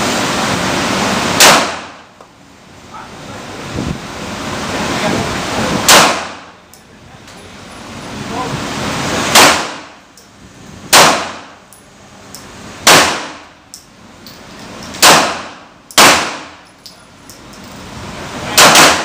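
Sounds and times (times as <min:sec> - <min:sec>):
pistol shots with echo: 0:01.4 - 0:02.0, 0:05.8 - 0:06.5, 0:09.3 - 0:09.9, 0:10.9 - 0:11.6, 0:12.8 - 0:13.5, 0:15.0 - 0:16.6, 0:18.6 - 0:19.0.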